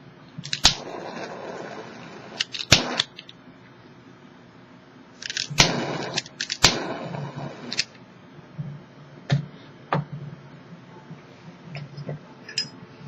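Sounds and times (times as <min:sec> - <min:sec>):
lighter flame hiss: 0:00.5 - 0:03.2, 0:05.2 - 0:07.9.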